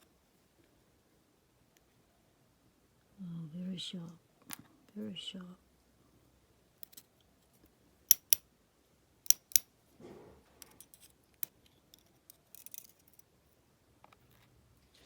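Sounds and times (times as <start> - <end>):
tool snipping clicks: 8.1 - 8.4
soft rustle: 14.1 - 15.0.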